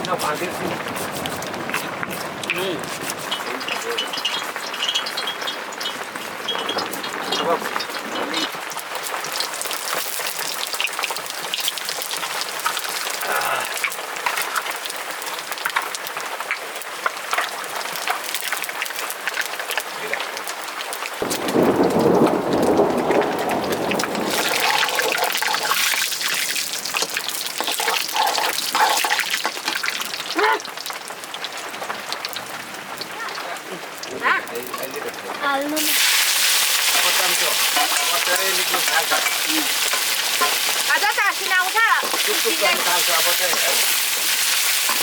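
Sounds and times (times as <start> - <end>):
heavy rain falling: 0.0 - 17.3, 18.6 - 45.0
thunder clap and rumble: 21.2 - 25.8.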